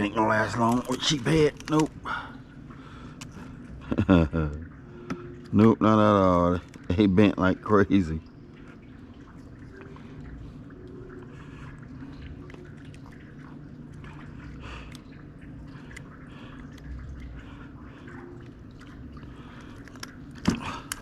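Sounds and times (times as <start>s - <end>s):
light rain dripping: 0.0s - 21.0s
low steady hum: 0.0s - 21.0s.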